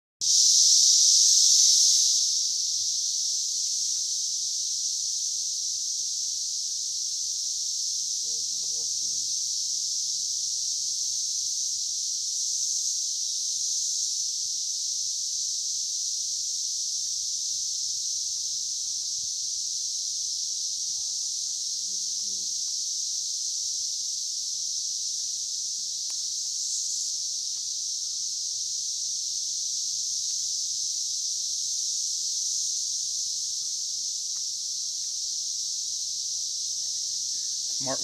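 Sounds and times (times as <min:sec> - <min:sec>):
cicadas droning: 0:00.2 - 0:38.0.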